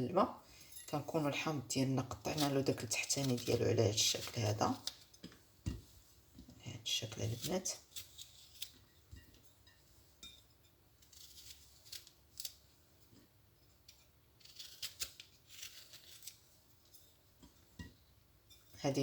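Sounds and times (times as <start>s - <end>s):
knife cutting lemon peel: 7.3s - 8.8s, 14.4s - 16.4s.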